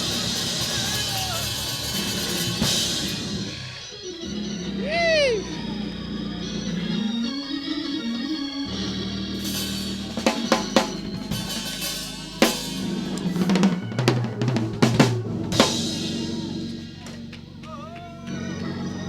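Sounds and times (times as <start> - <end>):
drum kit hits: 0.0 - 3.7, 9.4 - 17.3
bass notes: 0.0 - 19.0
sustained organ notes: 0.0 - 19.0
cymbal crashes: 9.4 - 13.2.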